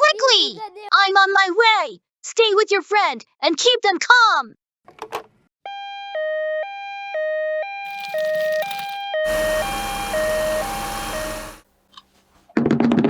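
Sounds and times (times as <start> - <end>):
two-tone ambulance siren: 7.9 - 11.6.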